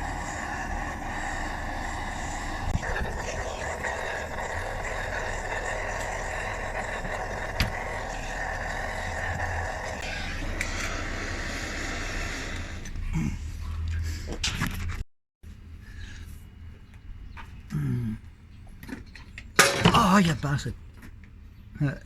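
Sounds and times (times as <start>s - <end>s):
gas torch flame hissing: 0.0s - 13.2s.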